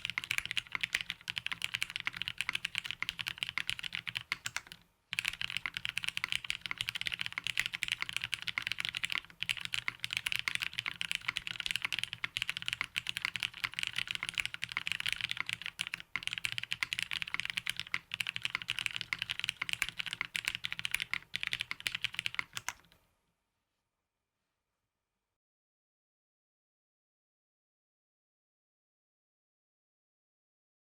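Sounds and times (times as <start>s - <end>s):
fast typing on mechanical keyboard: 0.0s - 22.9s.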